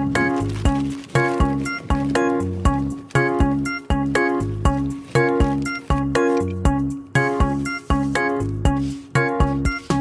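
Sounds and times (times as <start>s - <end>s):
background music with steady beat: 0.0s - 10.0s.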